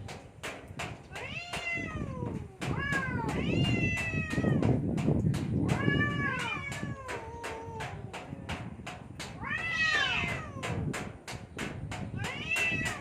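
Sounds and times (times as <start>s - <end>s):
cats caterwauling: 1.1s - 4.7s, 5.7s - 8.2s, 9.4s - 10.9s, 12.2s - 13.0s.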